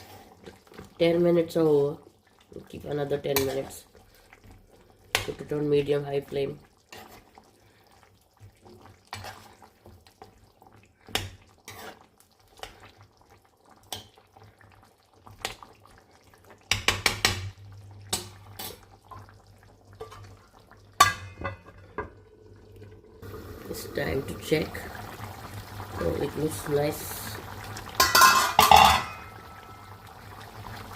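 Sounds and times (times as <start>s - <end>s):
utensils clinking against pan: 28.0s - 29.6s.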